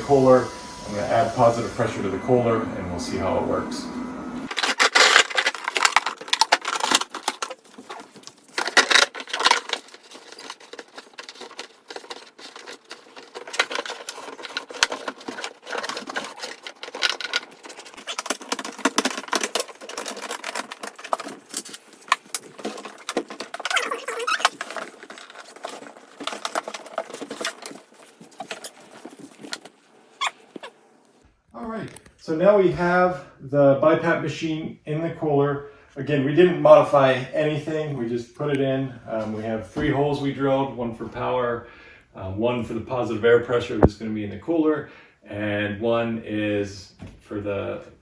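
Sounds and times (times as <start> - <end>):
handling rustling and scraping: 4.5 - 31.2.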